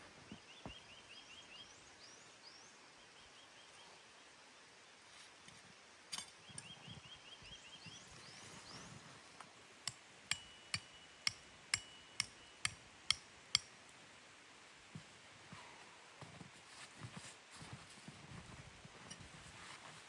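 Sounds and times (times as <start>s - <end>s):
sharp ringing knocks: 10.3s - 13.7s.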